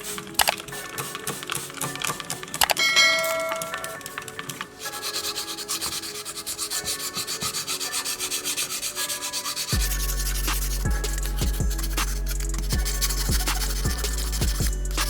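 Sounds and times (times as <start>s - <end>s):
sandpaper rubbing: 3.2s - 15.0s
deep bass with thumps: 9.8s - 15.0s.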